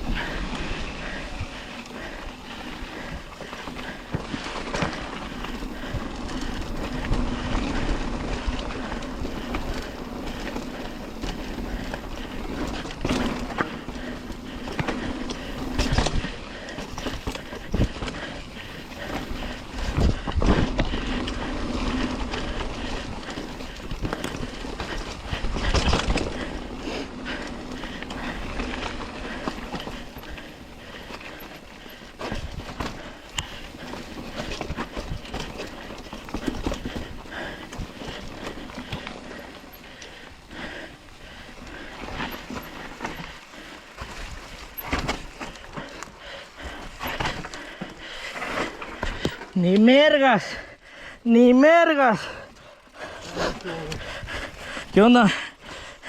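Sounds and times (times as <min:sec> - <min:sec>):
bike rolling on dirt trail: 0:00.0 - 0:56.0
bike knocks and rattles: 0:08.7 - 0:40.0, 0:41.8 - 0:49.5.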